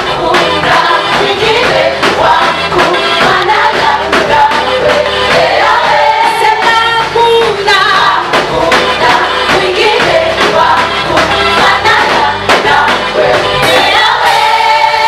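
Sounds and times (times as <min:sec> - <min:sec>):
band playing over a steady beat: 0:00.0 - 0:15.0
choir singing gospel song: 0:00.0 - 0:15.0.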